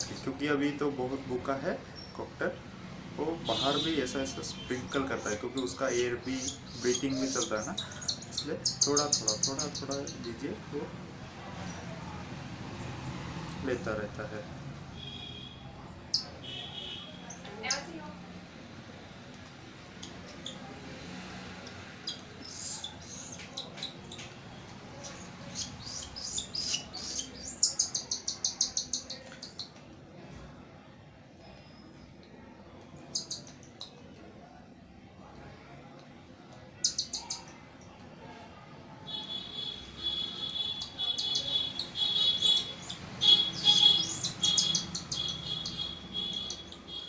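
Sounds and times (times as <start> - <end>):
cockatiel chick squeaking: 4.9 - 10.3, 22.0 - 24.3, 25.0 - 29.7, 39.1 - 47.0.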